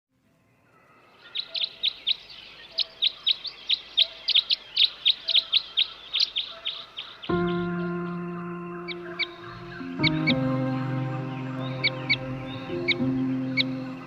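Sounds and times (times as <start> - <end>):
small bird chirping rapidly: 1.2 - 10.4.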